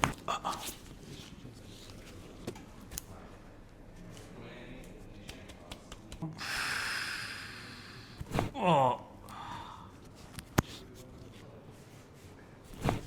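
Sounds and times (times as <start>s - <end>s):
rustling and handling: 0.0s - 3.2s, 10.0s - 13.0s
loud breathy exhale: 6.4s - 8.5s.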